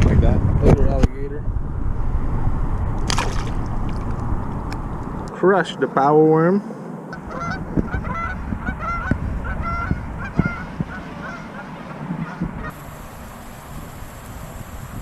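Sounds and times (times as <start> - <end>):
geese honking: 7.1 - 12.8.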